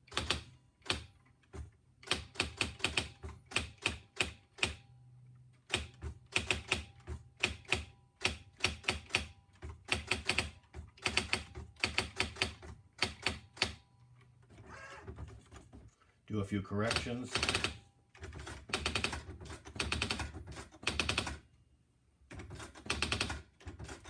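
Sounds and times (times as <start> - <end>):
electronic typewriter typing: 0.0 - 4.8, 5.6 - 13.8, 16.8 - 21.4, 22.3 - 24.0.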